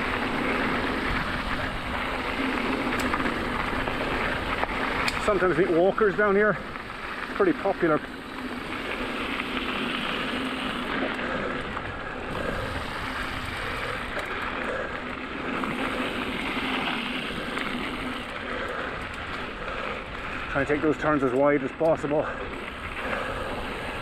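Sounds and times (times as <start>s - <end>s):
bike rattling: 0.0s - 24.0s
bike tyres on gravel: 0.0s - 24.0s.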